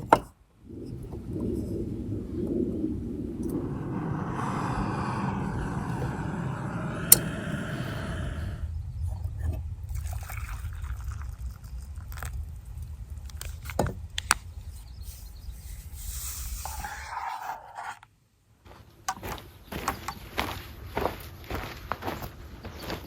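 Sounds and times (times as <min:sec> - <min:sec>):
low rumble: 0:00.5 - 0:14.6.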